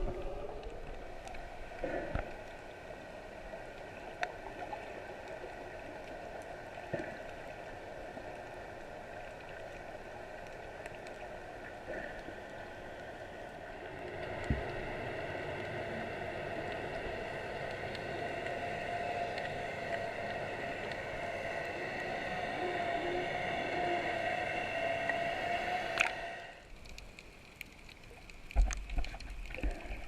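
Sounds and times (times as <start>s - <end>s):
machinery hum: 11.4s - 26.6s
click: 26.0s - 26.2s.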